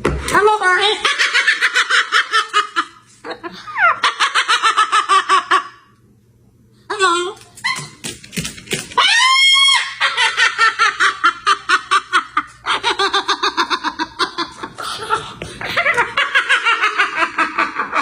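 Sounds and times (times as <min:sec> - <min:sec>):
parrot imitating laughter: 0:00.8 - 0:06.0, 0:09.0 - 0:18.0.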